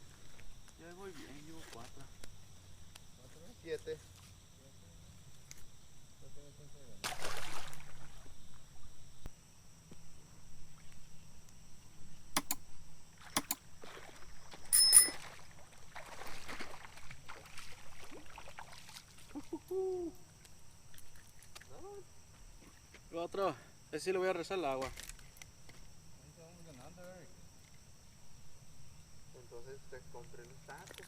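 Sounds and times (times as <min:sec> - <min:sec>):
sharp handling clicks: 0:12.4 - 0:12.6.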